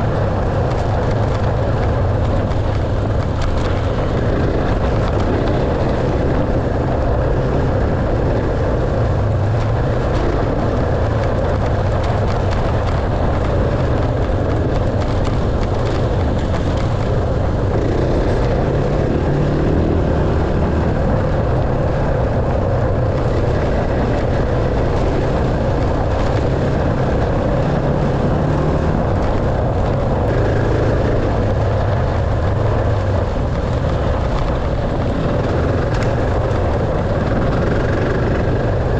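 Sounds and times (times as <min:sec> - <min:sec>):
dirt bike engine running: 0:00.0 - 0:38.9.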